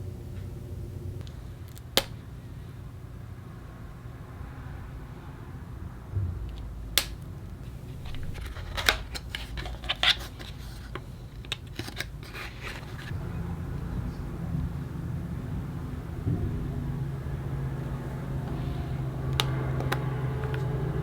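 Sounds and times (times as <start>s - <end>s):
low steady rumble: 0.0s - 11.3s, 12.2s - 21.0s
packaging clicks and rustles: 7.1s - 13.2s.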